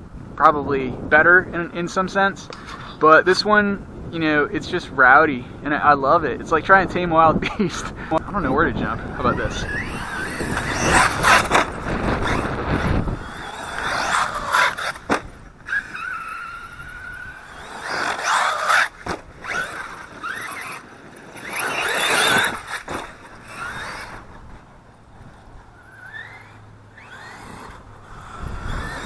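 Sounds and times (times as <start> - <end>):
wind buffeting microphone: 0.0 - 29.0
tyres scraping on dirt: 7.5 - 29.0
electric motor whining: 8.0 - 29.0.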